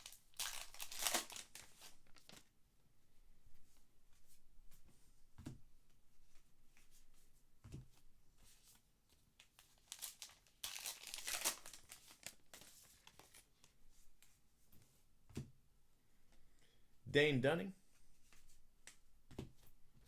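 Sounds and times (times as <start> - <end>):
wrapper crinkling being torn: 0.0 - 2.4, 9.4 - 13.6
soft thumps of cards on table: 5.4 - 5.6, 19.3 - 19.7.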